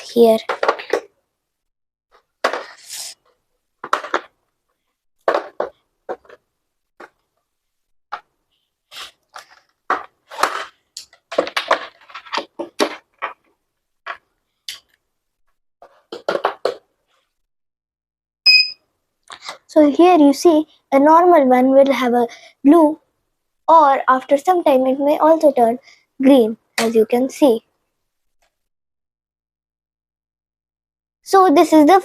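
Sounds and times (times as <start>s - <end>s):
plastic blocks clicking and rustling: 9.3s - 13.5s
short high beep: 18.5s - 18.8s.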